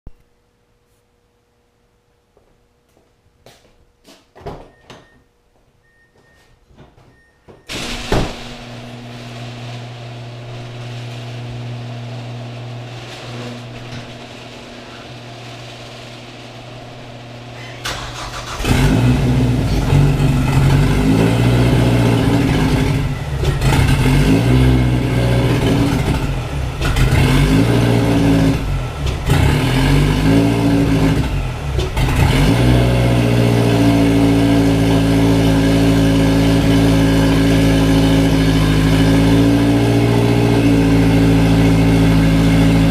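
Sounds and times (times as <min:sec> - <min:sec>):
steady hum: 0:07.7 - 0:24.0.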